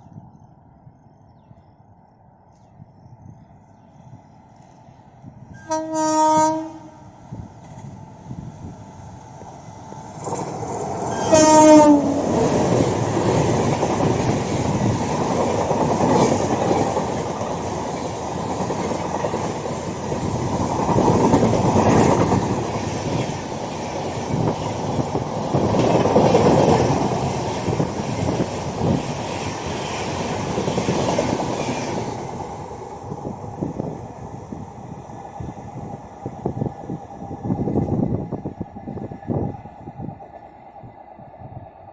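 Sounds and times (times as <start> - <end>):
train horn: 5.5 - 7.2, 11.1 - 12.4.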